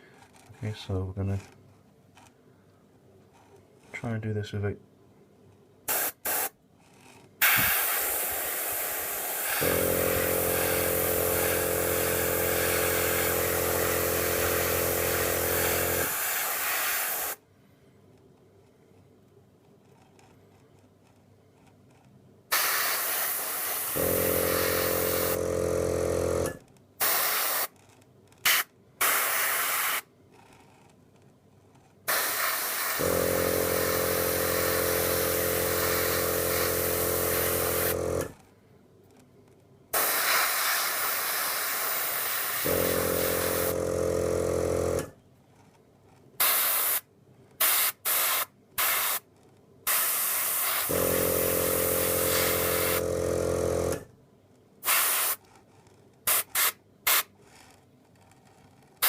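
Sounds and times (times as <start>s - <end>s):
airbrush hissing air: 5.9s - 6.6s, 7.4s - 17.4s, 22.5s - 27.7s, 28.4s - 30.1s, 32.1s - 38.3s, 40.0s - 43.8s, 46.4s - 47.0s, 47.6s - 49.2s, 49.9s - 53.1s, 54.8s - 55.4s, 56.3s - 57.3s
compressor motor humming: 7.4s - 16.4s, 22.5s - 27.5s, 32.1s - 38.4s, 42.4s - 45.1s, 50.8s - 54.1s.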